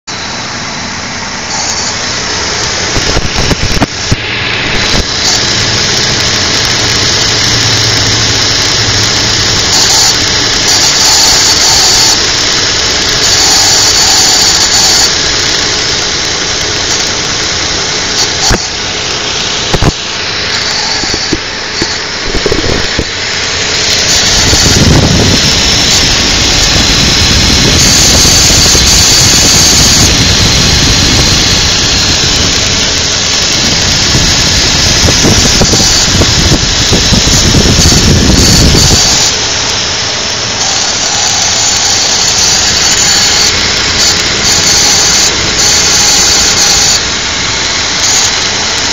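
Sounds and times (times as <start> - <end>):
car engine running: 0.0 - 48.9
high-pitched squeal: 0.0 - 48.9.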